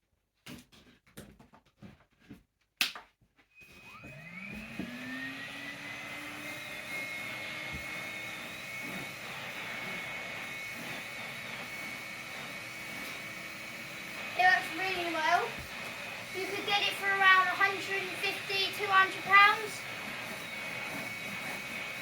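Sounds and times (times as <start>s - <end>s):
vacuum cleaner motor whining: 3.5s - 22.0s.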